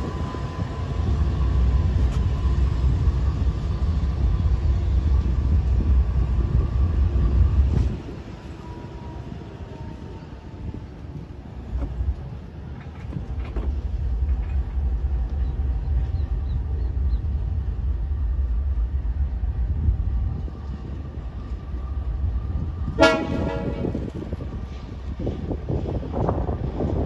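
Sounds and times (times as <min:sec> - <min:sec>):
locomotive engine rumble: 0:00.0 - 0:27.0
locomotive horn blast: 0:22.9 - 0:24.1.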